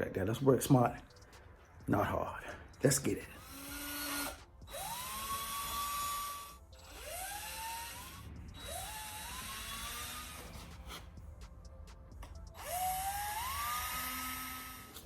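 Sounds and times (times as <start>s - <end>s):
power drill whining: 3.2s - 11.2s, 12.3s - 15.0s.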